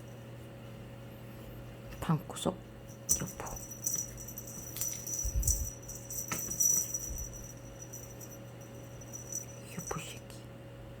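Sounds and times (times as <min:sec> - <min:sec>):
steady ringing note: 0:02.8 - 0:10.4
cat toy jingling rattle: 0:02.9 - 0:10.2.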